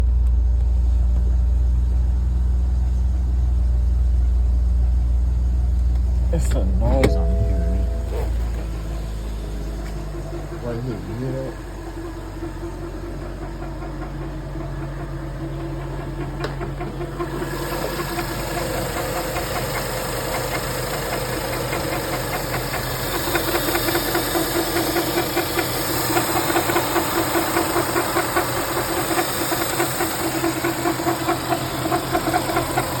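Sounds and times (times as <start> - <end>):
car engine idling: 0.1 - 33.0
fast even engine ticking: 10.3 - 33.0.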